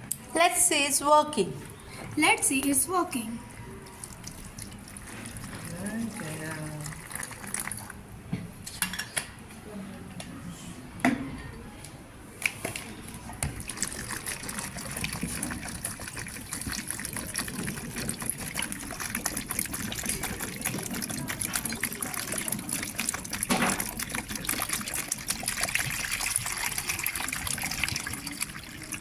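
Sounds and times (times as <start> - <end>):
water pouring and trickling: 2.8 - 8.0, 12.7 - 29.0
water gushing: 3.6 - 8.0, 12.9 - 29.0.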